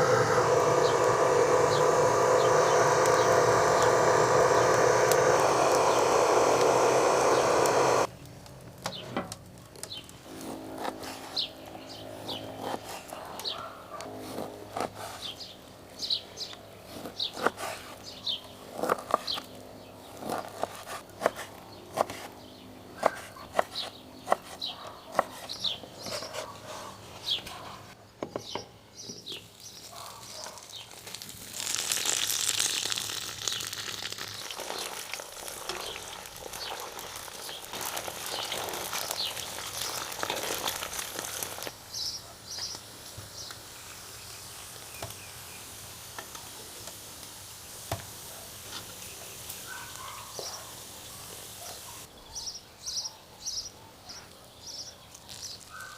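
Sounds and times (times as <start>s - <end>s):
birds chirping: 0.0s - 8.1s
loud steady hiss: 0.0s - 8.1s, 31.3s - 49.8s.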